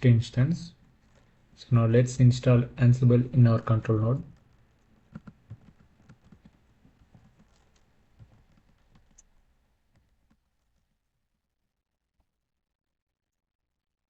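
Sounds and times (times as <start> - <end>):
faint keyboard typing: 3.6 - 10.9.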